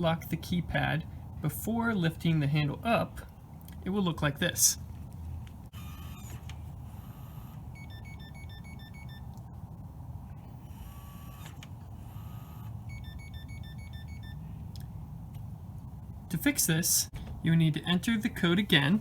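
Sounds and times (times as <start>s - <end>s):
lock motor whirring: 5.7s - 9.5s, 10.6s - 14.4s
short electronic beeps: 7.2s - 9.4s, 12.2s - 14.4s.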